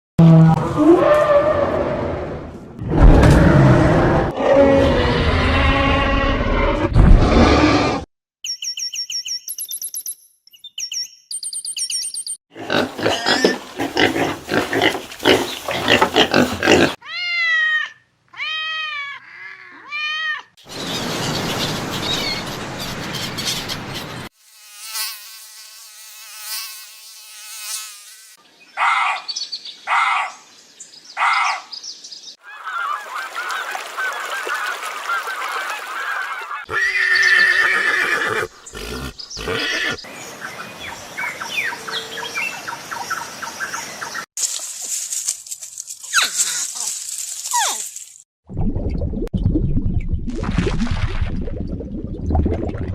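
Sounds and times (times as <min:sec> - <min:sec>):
noisy animal calls: 0:35.9 - 0:40.1.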